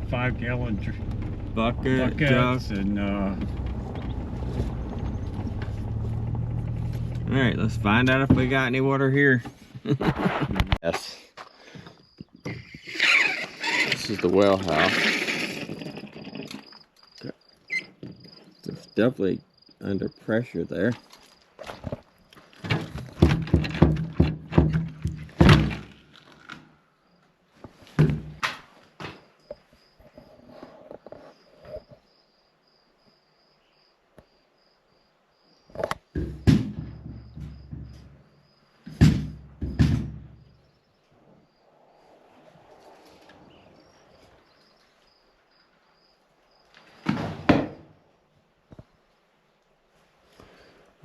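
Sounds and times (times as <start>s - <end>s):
hollow thunks and knocks: 7.9s - 8.8s, 22.6s - 26.0s, 27.9s - 29.2s, 36.1s - 40.6s, 47.0s - 47.9s
scraping rush: 12.9s - 16.4s.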